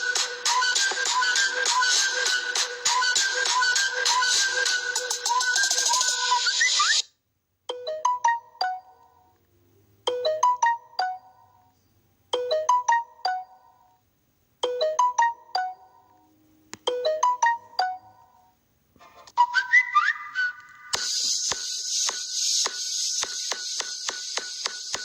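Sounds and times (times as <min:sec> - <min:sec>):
electronic ringtone melody: 0:00.0 - 0:06.8, 0:07.7 - 0:09.3, 0:10.1 - 0:11.7, 0:12.4 - 0:13.9, 0:14.6 - 0:16.2, 0:16.9 - 0:18.4.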